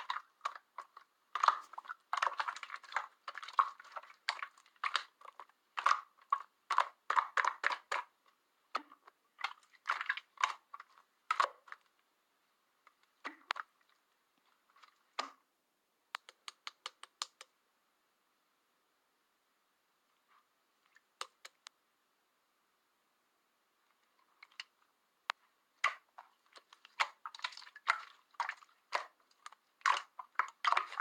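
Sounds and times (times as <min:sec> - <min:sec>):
slime squelching: 0:00.0 - 0:12.0, 0:12.9 - 0:15.4, 0:25.4 - 0:31.0
sharp clicks: 0:16.1 - 0:17.5, 0:21.2 - 0:21.8.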